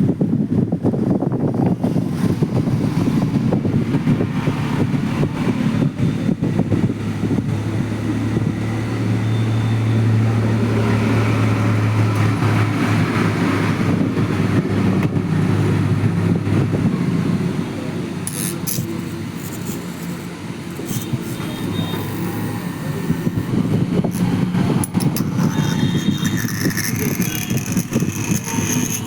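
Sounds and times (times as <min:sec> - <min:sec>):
constant noisy hiss: 0:15.2 - 0:29.0
low electrical hum: 0:16.7 - 0:29.0.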